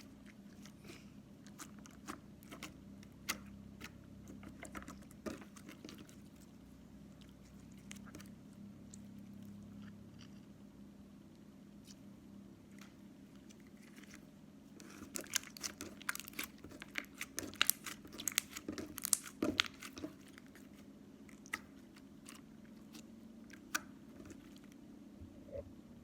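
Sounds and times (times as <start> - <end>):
steady low hum: 0.0 - 26.0
slime crackling and popping: 14.8 - 20.6.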